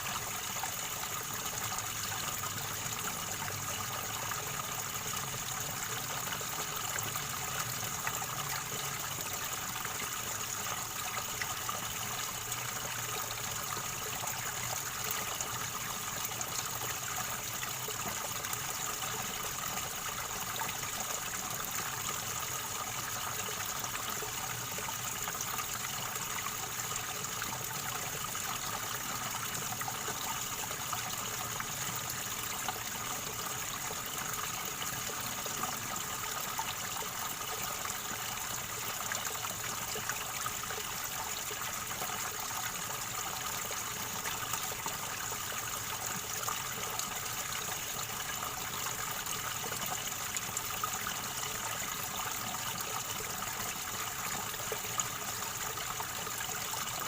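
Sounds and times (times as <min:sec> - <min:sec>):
river water gurgling over stones: 0:00.0 - 0:57.0.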